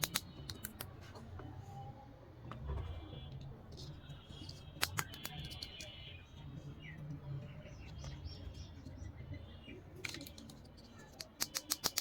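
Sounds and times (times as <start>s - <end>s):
sharp plastic clicks: 0.0s - 1.0s, 4.8s - 5.9s, 10.0s - 12.0s.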